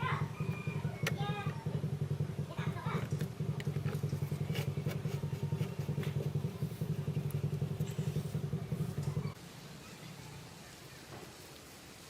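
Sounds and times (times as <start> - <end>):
engine idling: 0.0 - 9.4.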